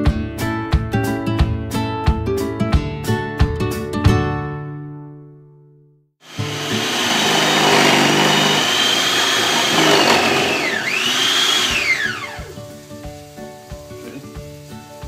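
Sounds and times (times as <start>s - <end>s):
blender motor whining: 6.2s - 12.6s.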